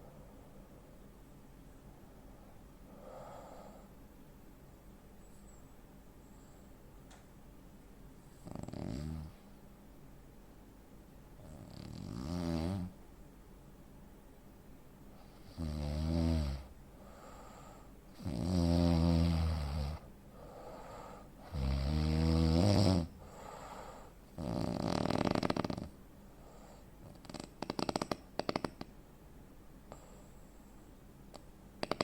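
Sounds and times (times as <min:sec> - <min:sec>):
long breathy breath: 0:02.9 - 0:04.0, 0:17.0 - 0:18.0, 0:20.3 - 0:21.3, 0:23.2 - 0:24.2
man snoring heavily: 0:08.4 - 0:09.3, 0:11.6 - 0:12.9, 0:15.5 - 0:16.7, 0:18.2 - 0:20.0, 0:21.5 - 0:23.1, 0:24.4 - 0:25.9.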